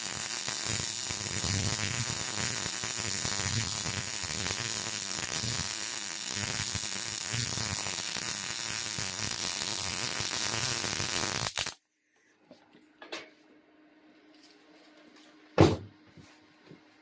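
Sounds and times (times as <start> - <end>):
welding arc crackling buzz: 0.0 - 11.8.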